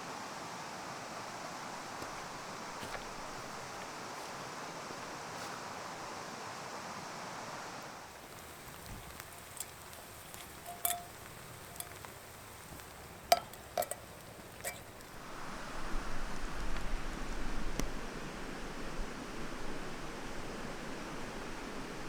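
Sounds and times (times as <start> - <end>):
light metal clinks and taps: 8.3 - 15.2.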